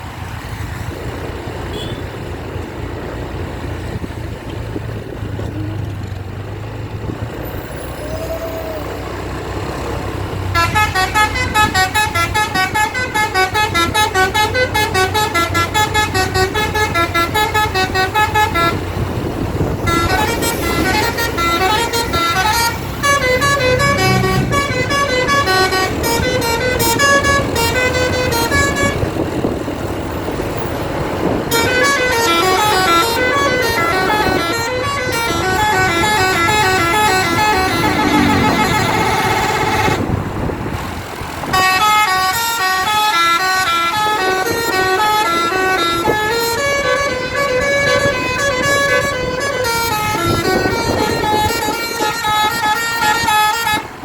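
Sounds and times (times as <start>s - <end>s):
bus engine running: 0.0s - 54.0s
musical bus air horn: 1.7s - 2.2s, 10.4s - 29.6s, 31.2s - 40.2s, 41.5s - 54.0s.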